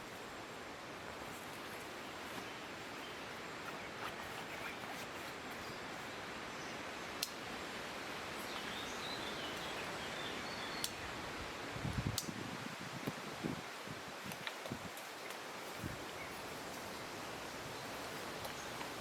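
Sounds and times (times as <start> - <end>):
strong wind through trees: 0.0 - 19.0
faint twig clicks: 7.2 - 7.5, 10.8 - 11.0, 12.1 - 12.4.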